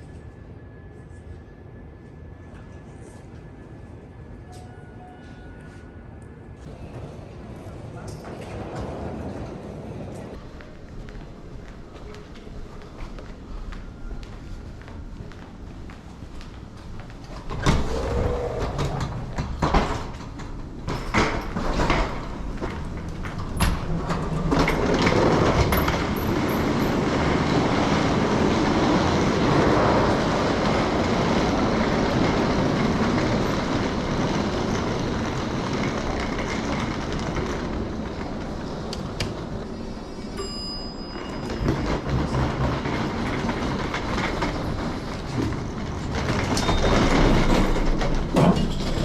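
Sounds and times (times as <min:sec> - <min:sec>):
rail car rumble: 0:00.0 - 0:49.0
wheel clatter: 0:16.8 - 0:49.0.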